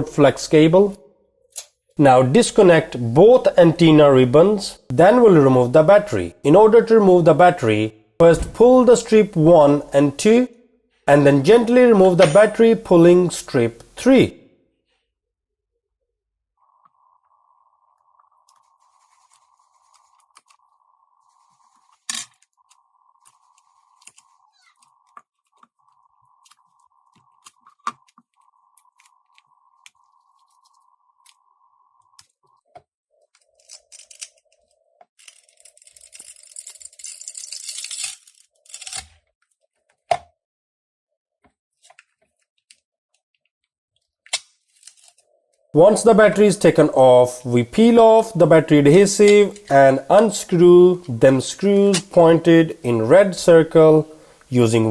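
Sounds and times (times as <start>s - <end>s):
adhesive strips crackling tear: 35.2s - 39.1s.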